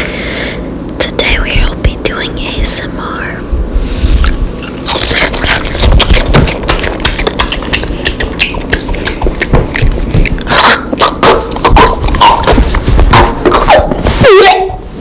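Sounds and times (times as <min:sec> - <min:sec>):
crunchy food being chewed: 0:04.2 - 0:14.1.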